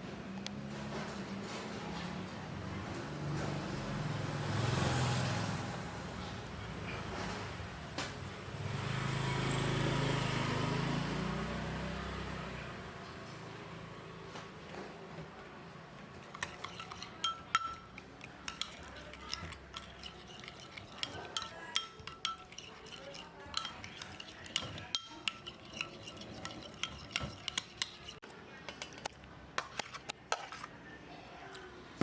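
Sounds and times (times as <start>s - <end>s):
utensil clinking in a bowl: 16.2s - 30.7s.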